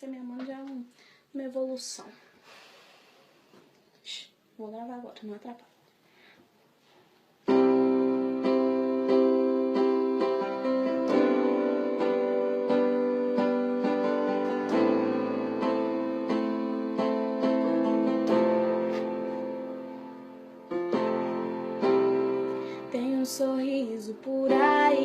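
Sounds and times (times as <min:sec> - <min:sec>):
slow piano music: 0:07.5 - 0:25.0.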